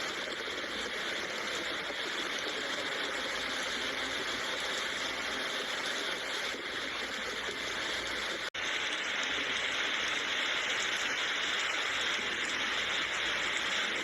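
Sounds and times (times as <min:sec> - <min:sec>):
steady rain falling: 0:05.6 - 0:14.0.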